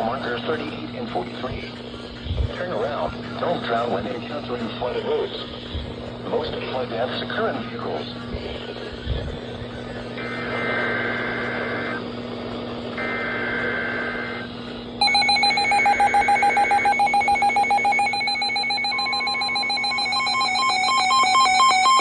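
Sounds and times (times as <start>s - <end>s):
electronic beeping tune: 15.0s - 22.0s.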